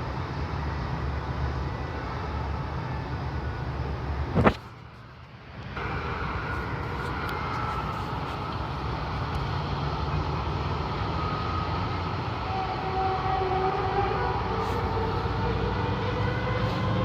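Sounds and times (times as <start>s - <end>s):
droning trumpet-like rumble: 5.8s - 17.0s.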